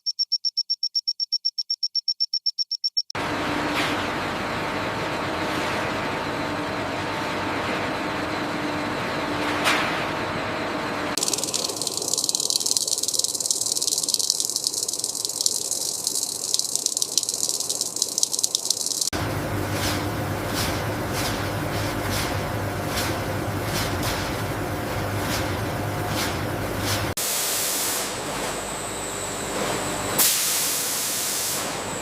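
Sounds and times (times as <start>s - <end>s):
click: 11.2s - 19.1s
crackling hiss: 11.2s - 19.1s
rapid rattling ticks: 11.2s - 19.1s
steady machine hum: 11.2s - 20.4s.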